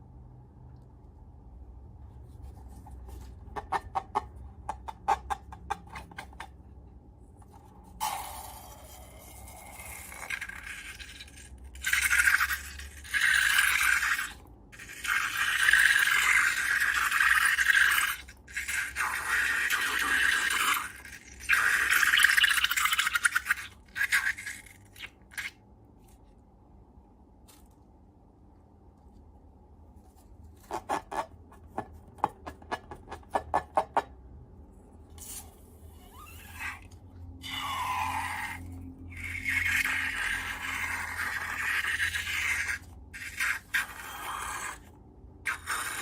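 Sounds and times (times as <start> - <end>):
slime rubbing and scraping: 29.8 - 32.1.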